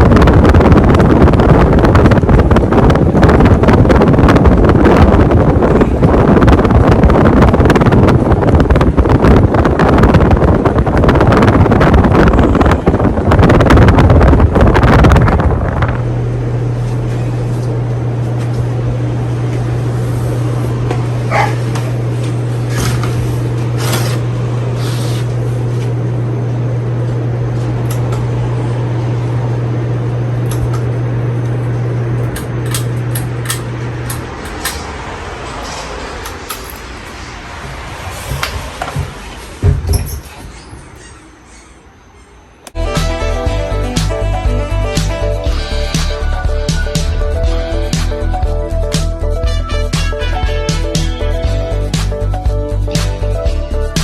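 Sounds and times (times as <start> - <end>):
wind buffeting microphone: 0.0 - 16.6
ceiling fan motor hum: 0.0 - 54.0.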